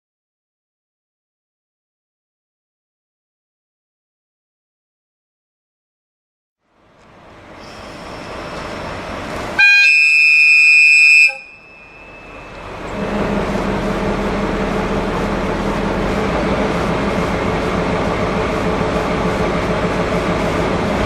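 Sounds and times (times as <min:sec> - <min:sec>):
diesel train rumbling: 0:06.6 - 0:21.0
train horn blast: 0:09.6 - 0:13.3.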